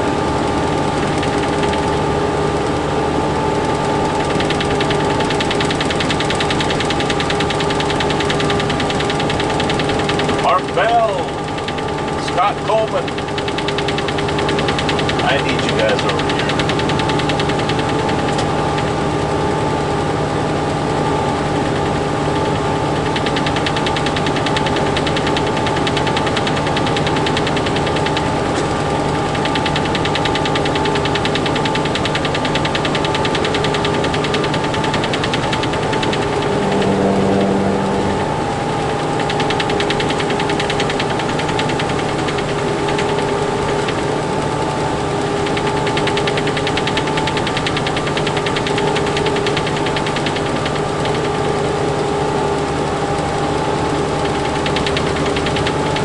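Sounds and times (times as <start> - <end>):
fast dense rattle: 0.5 - 2.9, 3.6 - 18.9, 23.1 - 37.7
truck engine drone: 3.6 - 11.2, 35.4 - 39.8
low hum: 35.7 - 39.4.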